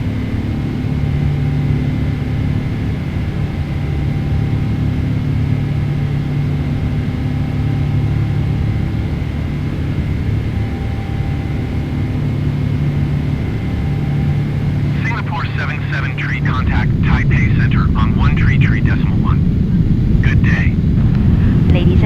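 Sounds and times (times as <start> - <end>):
faint steady whine: 0.0 - 22.0
jet engine drone: 0.0 - 22.0
rushing air: 16.1 - 21.9.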